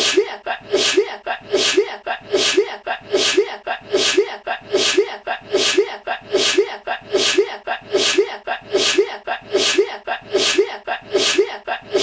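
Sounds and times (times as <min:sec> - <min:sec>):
person sneezing: 0:03.2 - 0:12.0.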